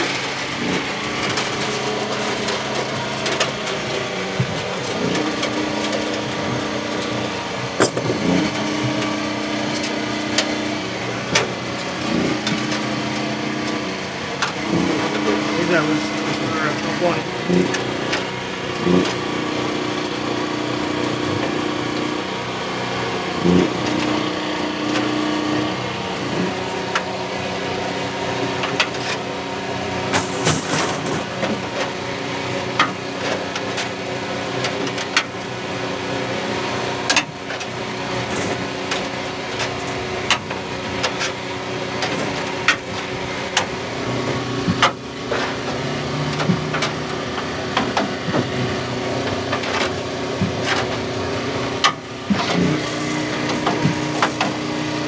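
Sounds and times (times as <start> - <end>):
car engines running: 0.0 - 55.0.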